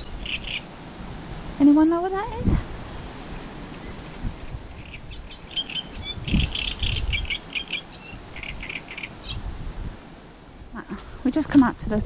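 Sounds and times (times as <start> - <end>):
songbird singing: 0.0 - 0.9, 3.2 - 11.7.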